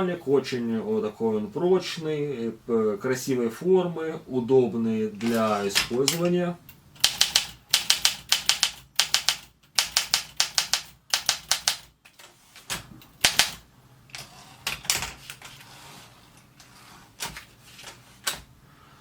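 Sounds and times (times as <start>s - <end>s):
typewriter platen ratchet clicking: 5.2s - 11.9s, 13.0s - 13.6s.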